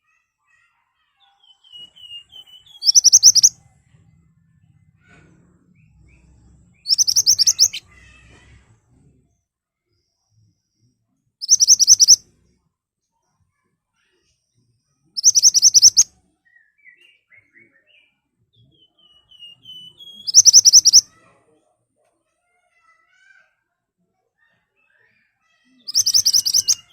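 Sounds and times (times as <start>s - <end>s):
soft bird twittering: 1.4s - 3.6s, 5.8s - 8.0s, 11.4s - 12.2s, 15.2s - 21.2s, 25.7s - 26.9s
bushchat singing sharp bursts: 2.8s - 3.5s, 6.9s - 7.8s, 11.4s - 12.2s, 15.2s - 16.0s, 20.2s - 21.0s, 25.9s - 26.9s.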